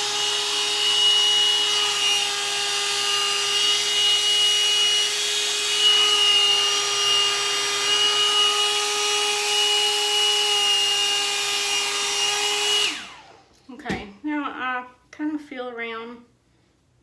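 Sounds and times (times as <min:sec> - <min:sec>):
hot-air dryer brush running: 0:00.0 - 0:13.5.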